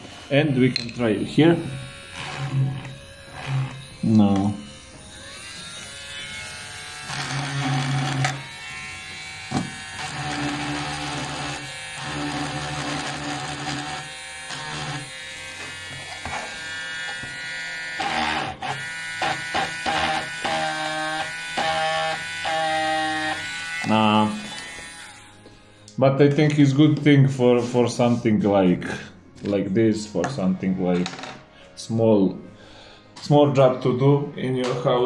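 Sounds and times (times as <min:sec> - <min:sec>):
rotary tool motor whining: 0:01.7 - 0:25.9.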